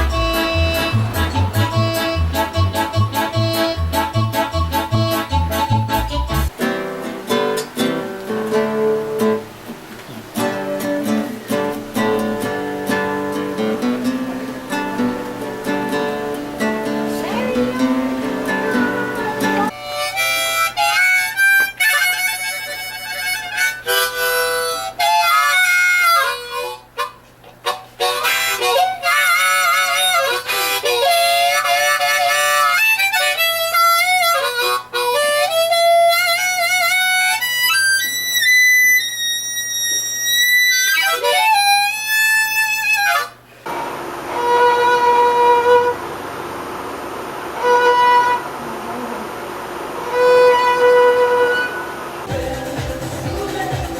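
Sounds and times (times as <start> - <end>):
held instrument note: 0.0 - 6.5, 16.6 - 26.8
harmonica melody: 0.0 - 9.4, 10.4 - 43.5, 44.3 - 46.1, 47.5 - 48.8, 50.0 - 53.9.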